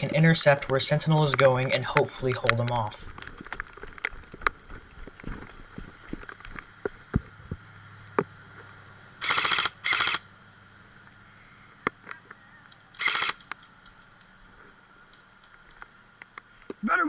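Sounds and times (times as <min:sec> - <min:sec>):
airsoft rifle full-auto bursts: 0:09.2 - 0:10.2, 0:13.0 - 0:13.4.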